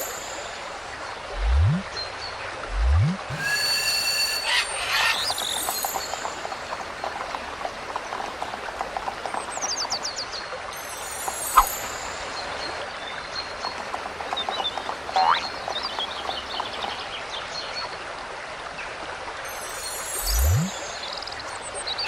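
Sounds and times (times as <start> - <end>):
low rising swoop: 1.3 - 1.8, 2.7 - 4.6
cartoon birds chirping: 2.8 - 6.3
rising whistle sweep: 2.8 - 6.6
steady hiss: 3.3 - 7.3.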